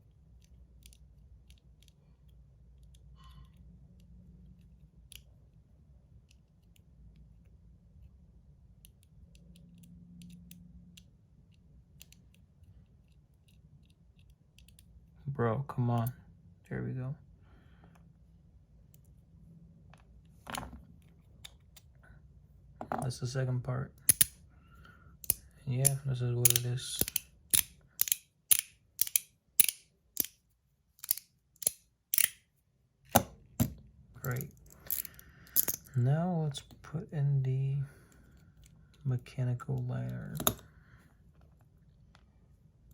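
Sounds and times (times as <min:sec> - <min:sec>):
small metal parts clicking: 0:24.0 - 0:24.4, 0:25.2 - 0:30.4, 0:31.0 - 0:32.4, 0:34.2 - 0:36.0, 0:40.3 - 0:40.6.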